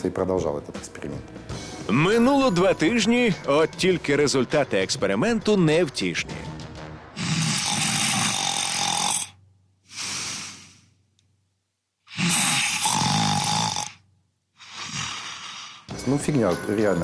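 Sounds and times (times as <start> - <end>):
man snoring: 7.2 - 10.8, 12.1 - 14.0, 14.6 - 15.9
soft breath out: 9.8 - 11.0.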